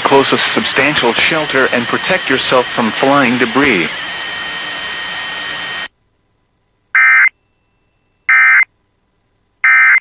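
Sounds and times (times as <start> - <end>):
digital data tone bursts: 7.0 - 7.3.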